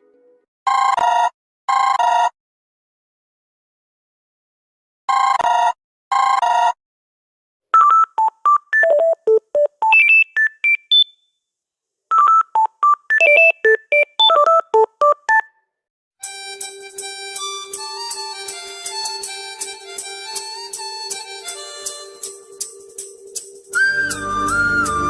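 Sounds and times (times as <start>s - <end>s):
phone rings: 12.1s - 15.5s
ringtone tune with low note: 12.2s - 15.6s, 16.2s - 25.0s
electronic ringtone melody: 13.1s - 15.5s, 16.5s - 25.0s.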